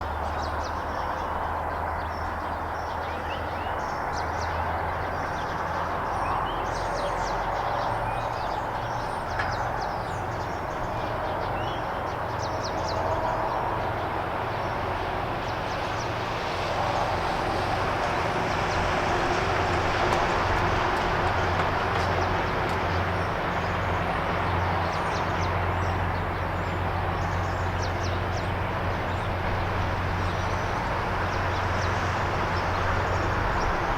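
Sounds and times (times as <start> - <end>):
diesel locomotive engine throbbing: 0.0 - 33.9
birds chirping: 0.1 - 17.2.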